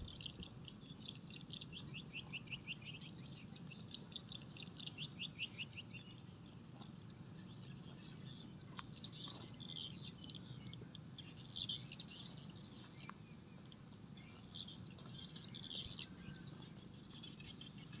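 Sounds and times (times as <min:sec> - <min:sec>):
low background noise: 0:00.0 - 0:18.0
small birds chirping: 0:00.0 - 0:18.0.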